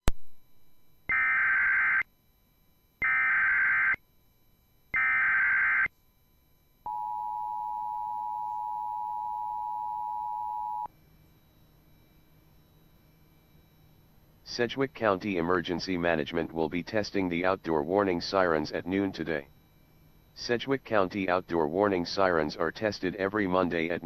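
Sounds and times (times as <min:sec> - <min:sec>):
two-tone attention signal: 0:06.9 - 0:10.9.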